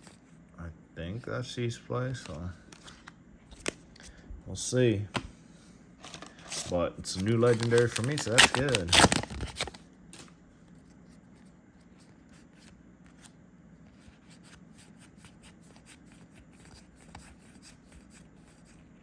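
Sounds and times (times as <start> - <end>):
trading cards clicking and rustling: 6.0 - 10.3.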